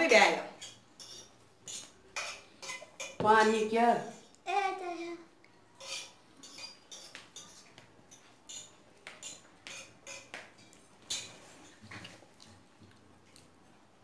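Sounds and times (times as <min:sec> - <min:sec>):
utensils clinking on a plate: 0:00.6 - 0:03.5, 0:05.8 - 0:12.2.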